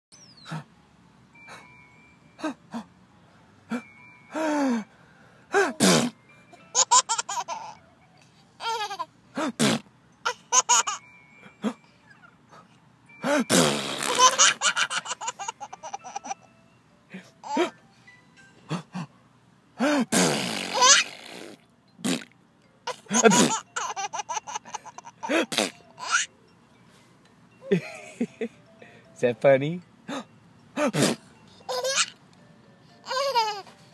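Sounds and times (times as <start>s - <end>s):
person laughing: 22.9s - 23.6s, 27.6s - 28.6s.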